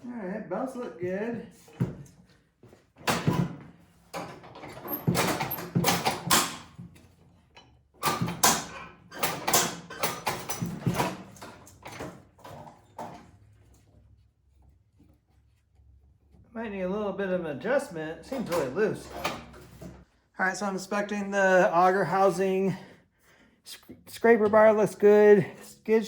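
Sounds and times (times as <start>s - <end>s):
knocks scrapes and rattles: 18.2s - 20.1s.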